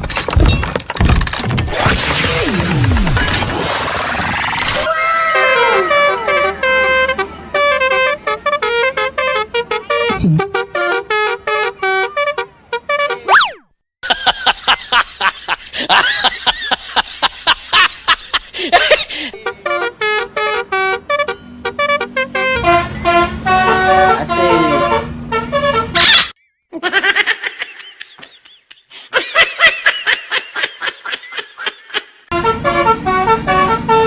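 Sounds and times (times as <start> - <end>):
multi-tone bus horn tune: 5.2 - 13.4, 18.8 - 26.2, 32.3 - 34.0.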